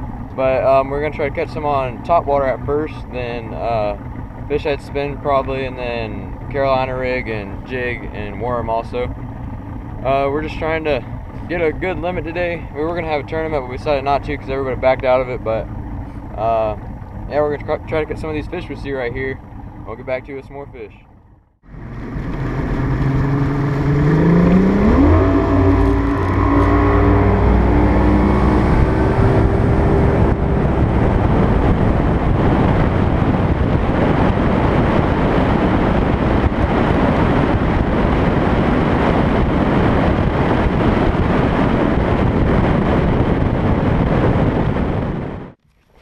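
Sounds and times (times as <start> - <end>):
outboard motor throttling up: 0.0 - 46.0
loud rushing: 21.6 - 35.5.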